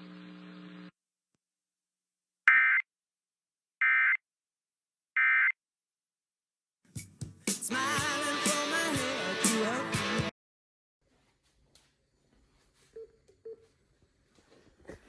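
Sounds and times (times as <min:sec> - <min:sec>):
station music: 0:07.0 - 0:10.3.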